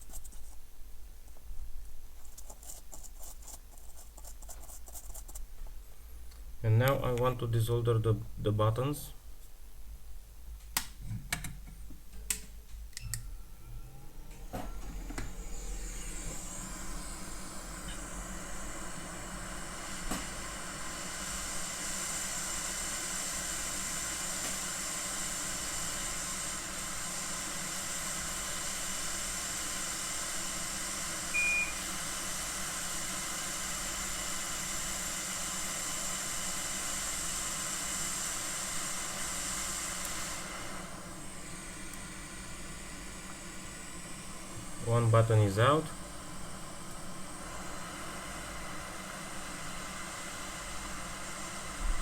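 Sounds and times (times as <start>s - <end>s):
hot air station hissing: 13.3s - 52.0s
short high beep: 31.4s - 31.8s.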